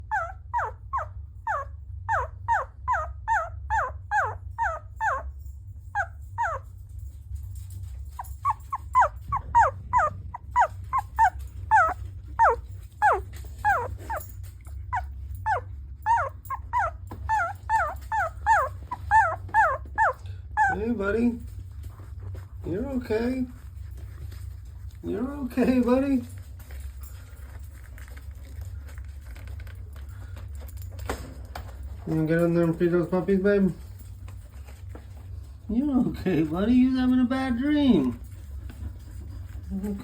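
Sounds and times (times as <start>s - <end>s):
puppy whimpering: 0.0s - 6.8s, 7.7s - 27.8s, 39.6s - 40.0s
steady low hum: 0.0s - 40.0s.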